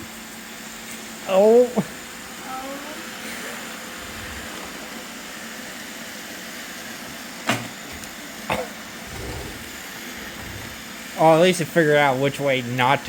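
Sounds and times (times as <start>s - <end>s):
robot vacuums whirring: 3.0s - 7.0s, 7.8s - 11.4s.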